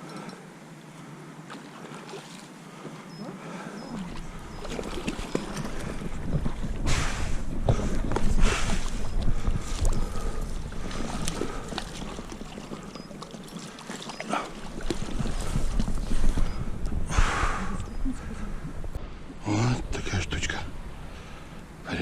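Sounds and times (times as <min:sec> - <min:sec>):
wind buffeting microphone: 0:03.9 - 0:13.7, 0:14.5 - 0:21.9.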